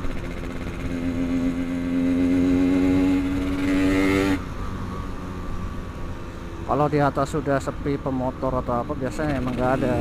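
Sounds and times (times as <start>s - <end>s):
motorcycle engine under throttle: 0.0s - 4.4s
road and wind noise: 0.0s - 10.0s.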